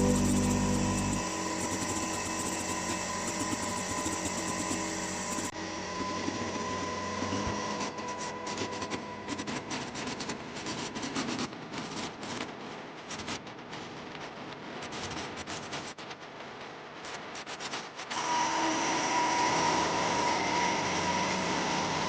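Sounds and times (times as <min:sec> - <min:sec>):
steady whine: 0:00.0 - 0:05.5.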